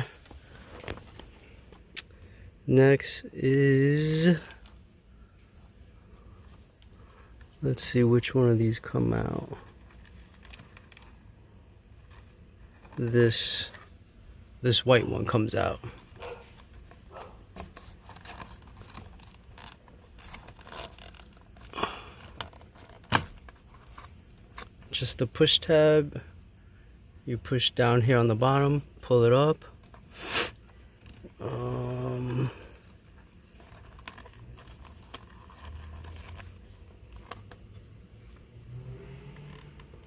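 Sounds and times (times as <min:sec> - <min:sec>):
plastic scraping: 0:00.0 - 0:02.4, 0:09.2 - 0:11.3, 0:15.6 - 0:24.9, 0:29.7 - 0:40.0.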